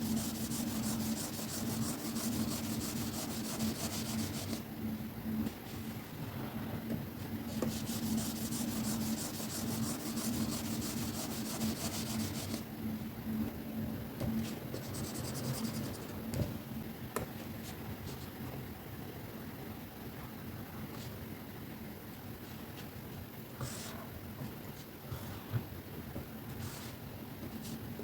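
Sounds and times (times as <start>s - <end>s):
stylus scratching on tablet screen: 0.0s - 4.6s, 7.5s - 12.6s, 14.7s - 16.2s.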